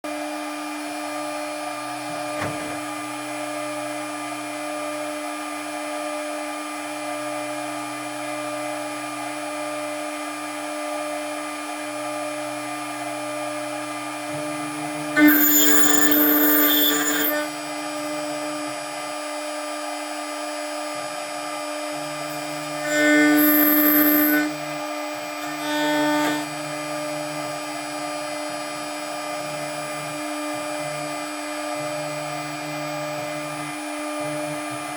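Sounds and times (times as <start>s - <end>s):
milling spindle whine: 11.0s - 34.9s
harsh milling bursts: 15.2s - 18.1s, 22.3s - 26.7s.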